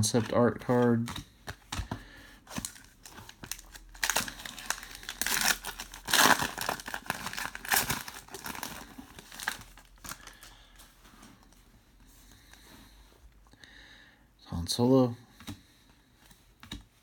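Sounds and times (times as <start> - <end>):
card packaging crinkling: 2.5 - 10.5.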